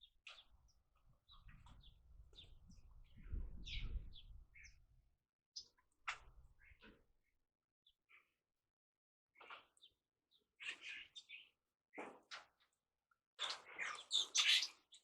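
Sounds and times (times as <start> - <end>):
birds chirping: 0.0 - 4.8.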